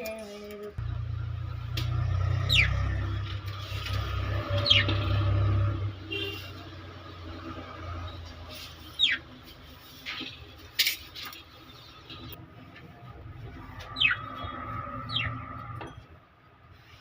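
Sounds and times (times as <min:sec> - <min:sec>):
lovebirds chirping: 0:04.5 - 0:05.2.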